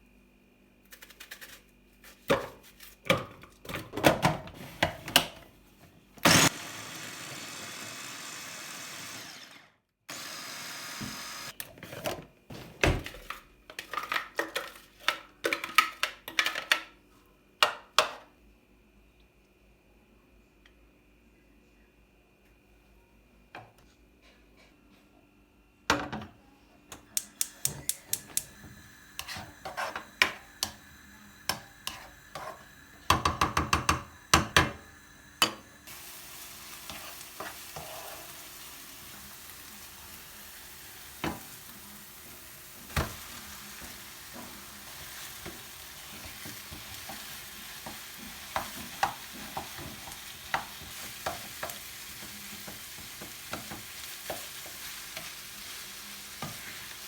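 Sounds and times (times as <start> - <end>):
food sizzling in a frying pan: 34.2 - 57.0.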